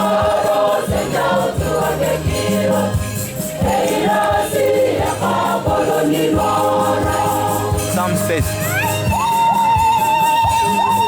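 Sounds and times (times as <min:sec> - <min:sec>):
choir singing a hymn: 0:00.0 - 0:08.4.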